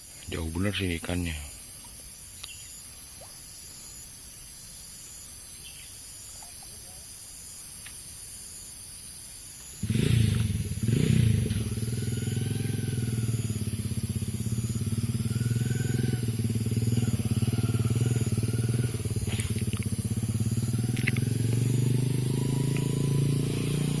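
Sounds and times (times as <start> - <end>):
engine running with fast pulsing: 9.8 - 24.0.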